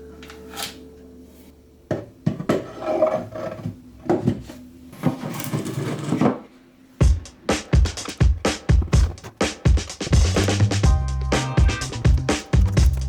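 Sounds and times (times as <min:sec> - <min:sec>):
scraping and rubbing wood: 0:07.7 - 0:10.9, 0:11.7 - 0:13.0.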